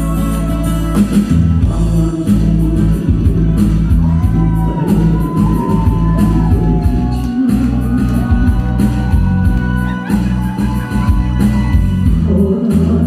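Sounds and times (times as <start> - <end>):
person singing: 0.0 - 13.0
drum beat: 2.6 - 12.3.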